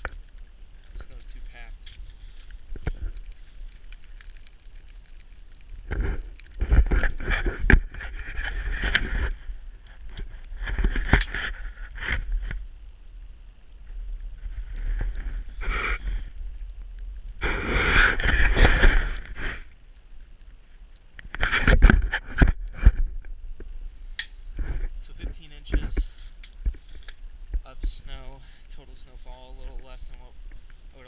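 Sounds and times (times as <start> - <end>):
snow scraping and crunching: 0.0 - 12.6, 13.9 - 16.5, 17.4 - 19.7
wind rumbling on microphone: 0.0 - 20.4, 21.0 - 31.0.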